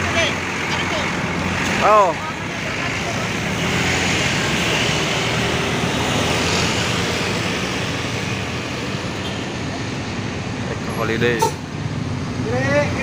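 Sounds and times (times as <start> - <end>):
bus engine running: 0.0 - 13.0
rushing road noise: 0.0 - 13.0.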